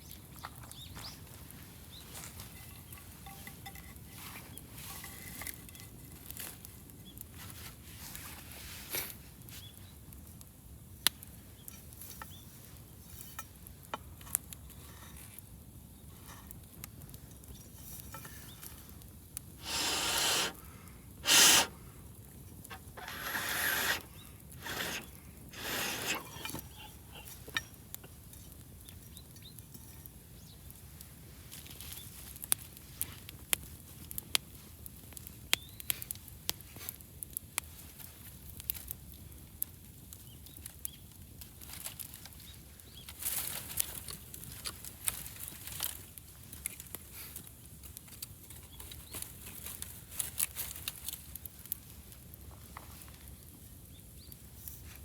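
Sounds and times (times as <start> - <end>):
wood fire crackling: 9.1 - 55.0
fire pops and snaps: 18.0 - 29.4, 30.7 - 53.5
short noisy bursts: 19.6 - 20.6, 21.2 - 21.8, 22.7 - 26.8.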